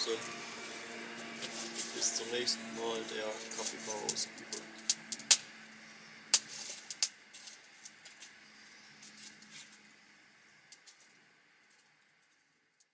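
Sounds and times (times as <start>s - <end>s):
campfire crackling and popping: 3.0s - 8.4s.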